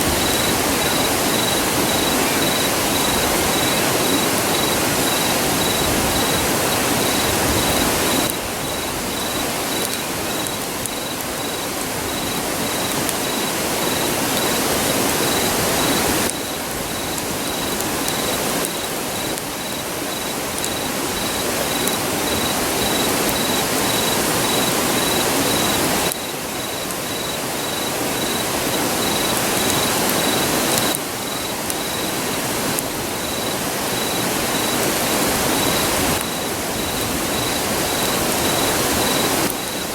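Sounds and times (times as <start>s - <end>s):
insect chirping: 0.0s - 39.9s
river rushing: 0.0s - 39.9s.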